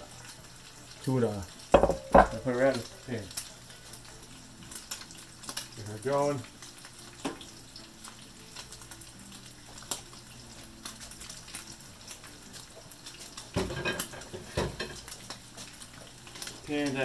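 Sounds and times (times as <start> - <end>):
fish sizzling in a pan: 0.0 - 17.0
cookware clunks: 1.8 - 2.5.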